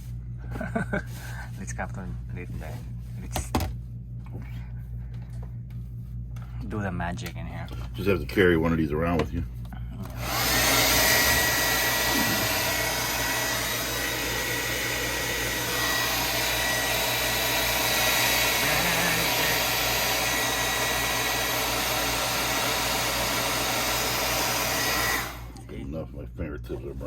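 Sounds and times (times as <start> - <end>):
hair dryer blowing: 10.0 - 25.7.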